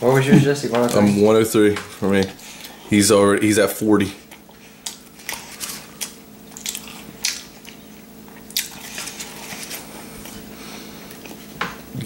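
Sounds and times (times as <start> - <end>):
faint steady hum: 0.0 - 12.0
wet chewing: 4.0 - 11.6.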